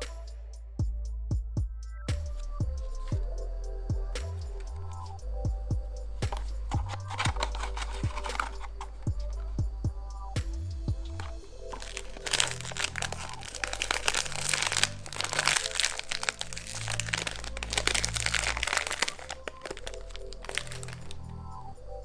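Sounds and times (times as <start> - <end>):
background music: 0.0 - 22.0
plastic packaging crinkling: 6.3 - 9.1, 11.2 - 21.2.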